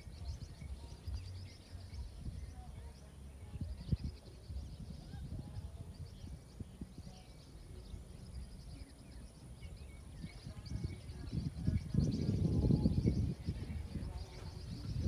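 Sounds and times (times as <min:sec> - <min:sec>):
birds chirping and singing: 0:00.0 - 0:15.0
low rumble and thumping: 0:03.6 - 0:07.1.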